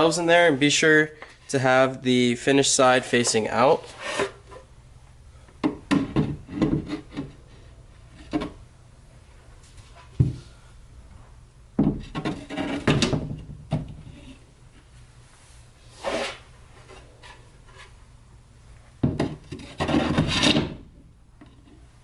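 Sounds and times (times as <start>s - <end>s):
wooden shelf boards scraping: 3.8s - 4.7s, 6.0s - 8.6s, 12.0s - 13.2s, 15.9s - 18.0s, 19.2s - 20.9s.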